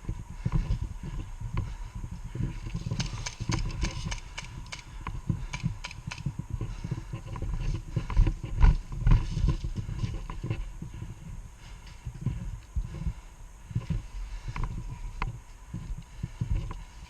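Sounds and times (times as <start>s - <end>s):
kit rattling: 2.8s - 6.3s.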